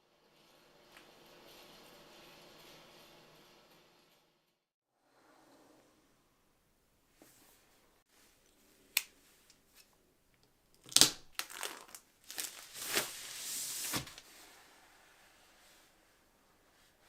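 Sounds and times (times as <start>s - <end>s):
plastic wrapping crinkling: 10.8s - 14.2s.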